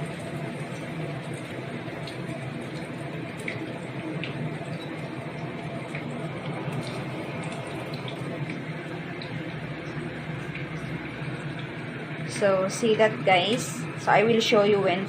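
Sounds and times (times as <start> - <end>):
eggplant frying in oil: 0.0 - 15.0.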